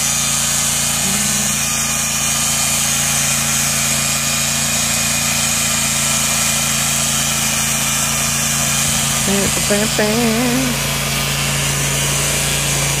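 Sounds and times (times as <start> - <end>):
engine hum: 0.0 - 2.0, 8.4 - 13.0
saw blade cutting wood: 0.0 - 13.0.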